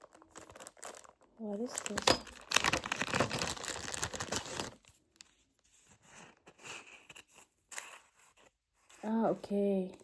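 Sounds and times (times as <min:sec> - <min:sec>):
plastic packaging crinkling: 0:00.0 - 0:05.0.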